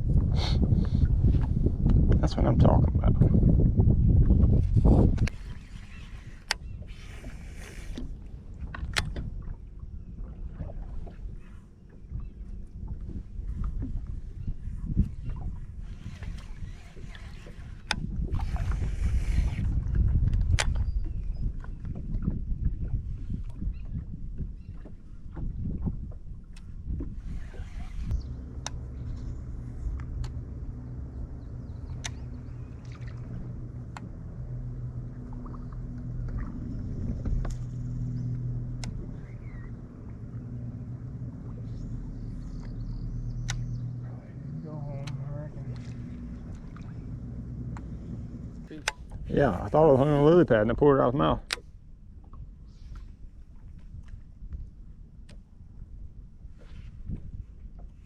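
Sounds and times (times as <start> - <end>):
low boat rumble: 0.0 - 58.0
sharp clicks: 29.9 - 30.4, 31.8 - 32.4, 42.6 - 44.0.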